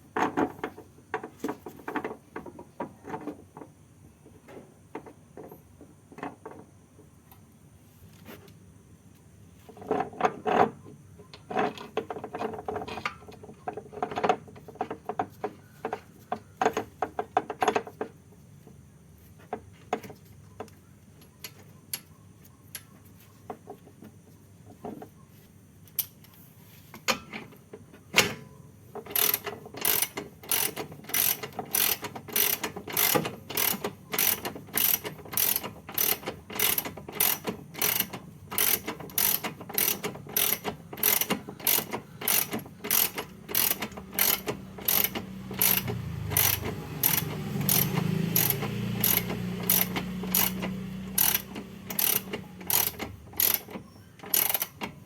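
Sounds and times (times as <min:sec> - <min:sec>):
ratchet wrench clicking: 0:29.1 - 0:54.9.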